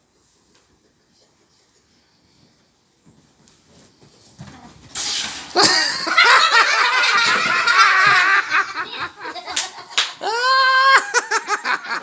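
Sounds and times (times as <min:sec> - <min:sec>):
high-pitched laughing: 0:05.6 - 0:12.0
long high-pitched cry: 0:10.2 - 0:12.0.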